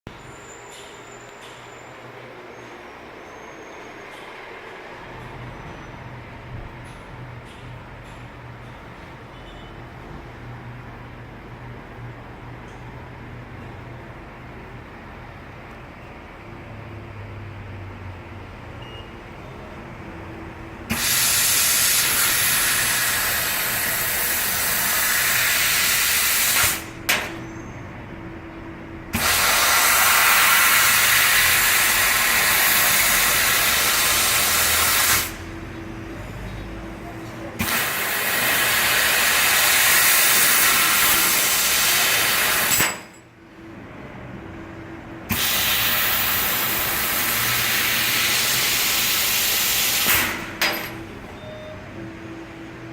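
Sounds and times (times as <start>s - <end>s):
laser cutter gas hissing: 20.8s - 27.6s, 29.1s - 35.6s, 37.6s - 43.2s, 45.3s - 50.8s.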